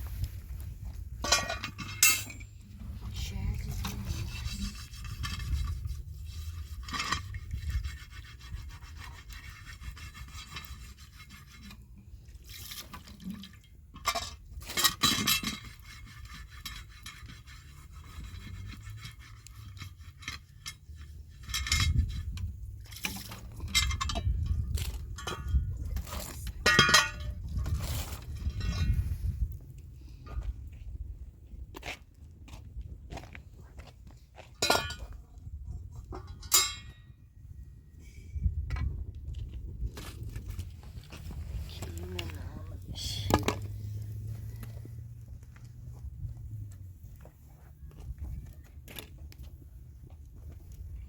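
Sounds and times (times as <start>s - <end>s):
steady low rumble: 0.0s - 6.2s, 37.5s - 47.4s
objects clinking and scraping: 0.9s - 7.4s, 12.4s - 17.2s, 18.2s - 29.2s, 34.5s - 35.4s.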